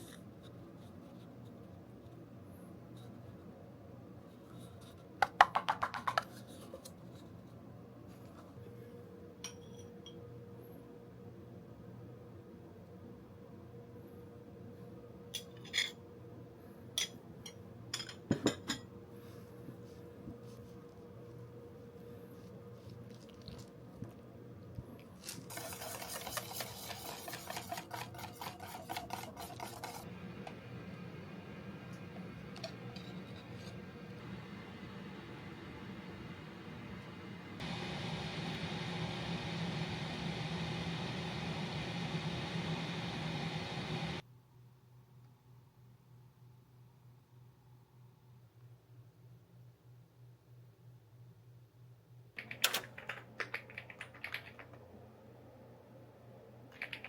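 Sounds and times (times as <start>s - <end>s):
faint steady hum: 0.0s - 57.0s
batter whisked in a bowl: 25.1s - 30.3s.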